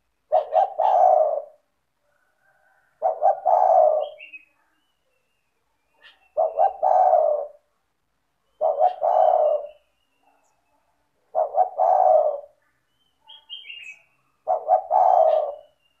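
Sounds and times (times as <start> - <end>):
dove cooing: 0.0 - 4.6, 6.0 - 7.7, 8.4 - 10.5, 11.2 - 12.7, 13.3 - 16.0
small bird chirping: 3.4 - 7.3, 12.4 - 16.0.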